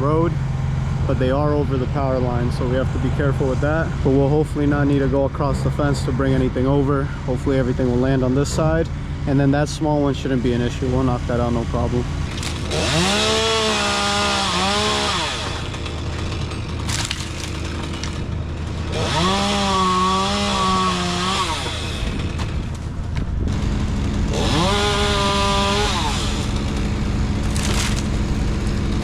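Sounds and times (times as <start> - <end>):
two-stroke chainsaw revving: 10.5 - 29.0.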